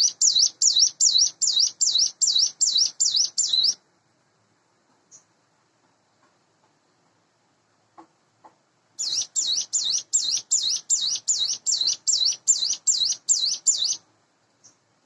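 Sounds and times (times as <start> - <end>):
bird singing high notes: 9.0 - 14.0.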